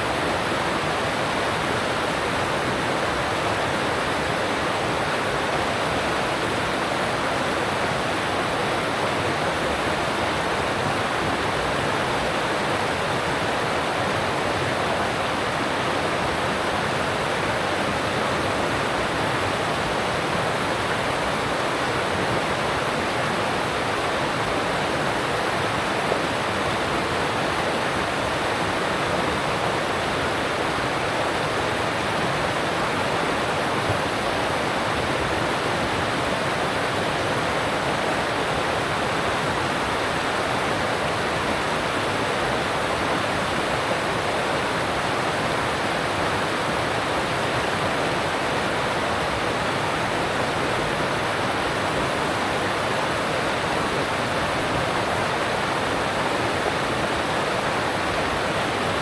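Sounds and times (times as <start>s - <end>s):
stream rushing over rocks: 0.0s - 59.0s.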